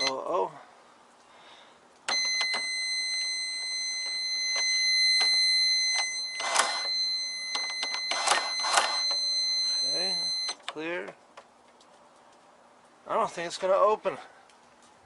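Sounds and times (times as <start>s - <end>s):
cash register error beep: 2.1s - 10.6s.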